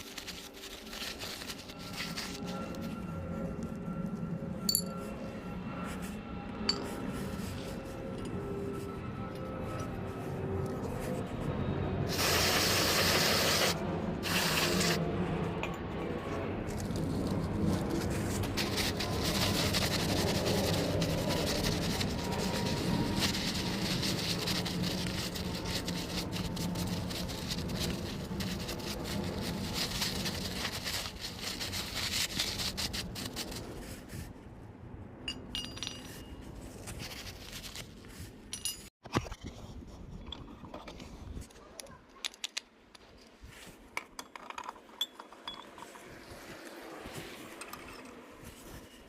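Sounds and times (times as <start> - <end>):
rubbing and scraping metal: 0.0 - 3.1, 16.7 - 34.3.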